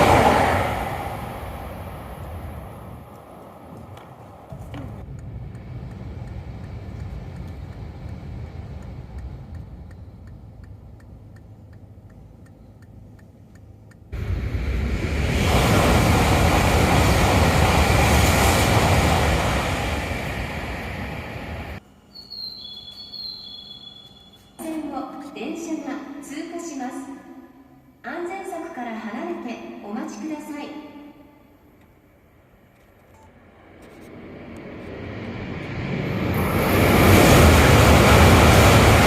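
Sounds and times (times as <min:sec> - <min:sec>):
high speed train rushing past: 0:00.0 - 0:11.3, 0:14.1 - 0:21.9, 0:31.5 - 0:39.0
low steady rumble: 0:02.3 - 0:15.4.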